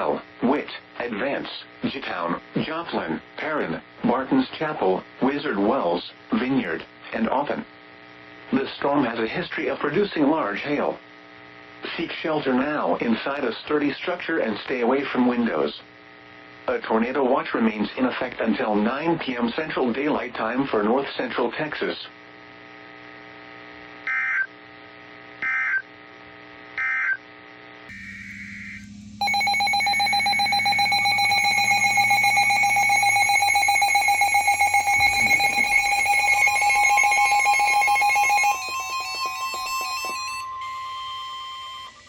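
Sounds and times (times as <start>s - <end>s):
steady hum: 27.9s - 40.4s
alert data bursts: 27.9s - 40.5s
buzzy alert tone: 27.9s - 40.5s
single steady tone: 27.9s - 40.5s.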